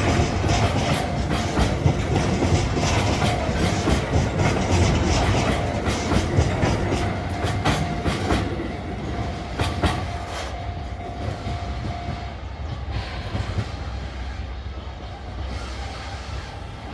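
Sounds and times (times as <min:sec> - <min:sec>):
train wheels clacking over rail joints: 0:00.0 - 0:12.2.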